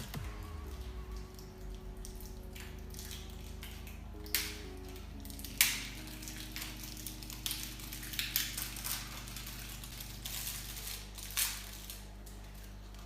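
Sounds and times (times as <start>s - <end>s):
soft background music: 0.0s - 13.0s.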